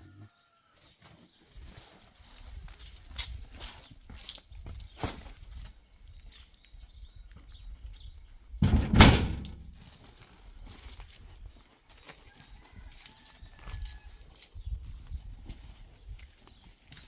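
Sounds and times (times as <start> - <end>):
loud thud: 8.6 - 9.9.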